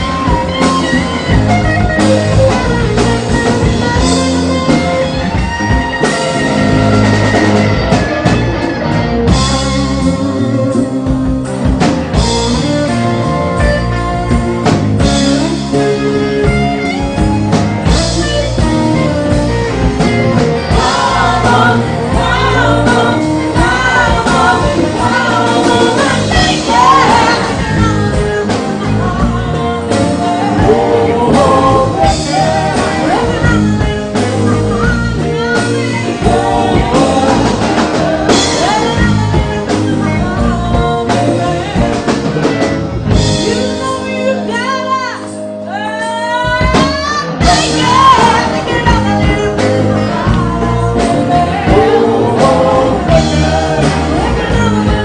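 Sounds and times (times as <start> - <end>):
drum kit: 0.0 - 55.0
electric guitar: 0.0 - 55.0
woman singing: 20.7 - 42.2, 43.4 - 55.0.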